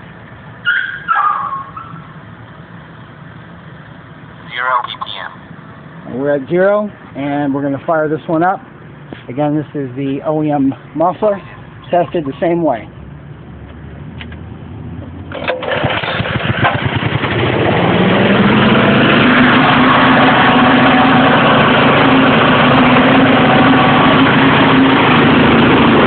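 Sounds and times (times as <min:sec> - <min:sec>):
small petrol engine starting and running: 0:15.2 - 0:26.0.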